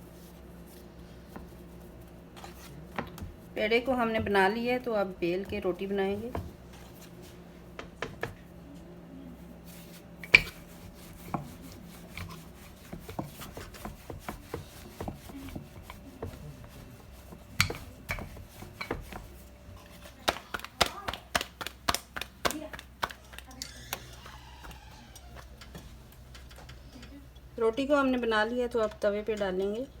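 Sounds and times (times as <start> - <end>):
rolling pin knocking on board: 2.9 - 6.7, 7.7 - 8.4, 10.2 - 19.4.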